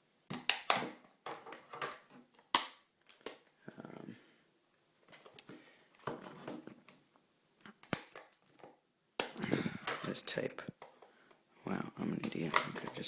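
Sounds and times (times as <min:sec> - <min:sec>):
loud plastic snap: 0:00.3 - 0:01.1, 0:01.9 - 0:03.4, 0:07.7 - 0:10.1.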